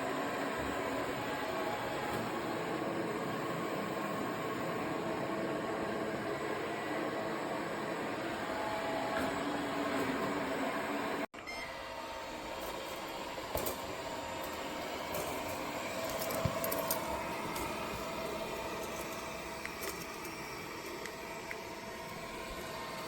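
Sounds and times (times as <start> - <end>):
robot vacuum motor hum: 11.7 - 23.0.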